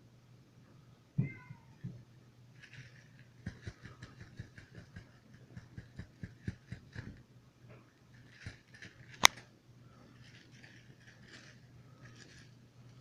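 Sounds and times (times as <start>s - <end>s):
kitten taps and scuffles: 3.4s - 7.2s.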